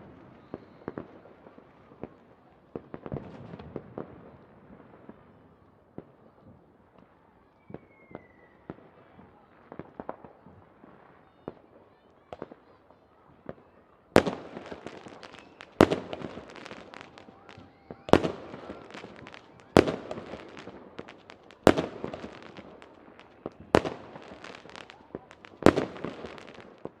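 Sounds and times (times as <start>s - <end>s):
fireworks bangs: 2.8s - 5.3s, 13.4s - 27.0s.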